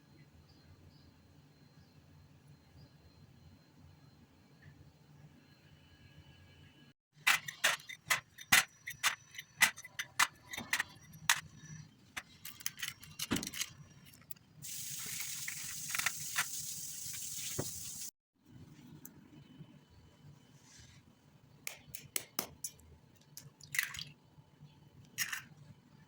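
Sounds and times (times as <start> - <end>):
steady high hiss: 14.6 - 18.1.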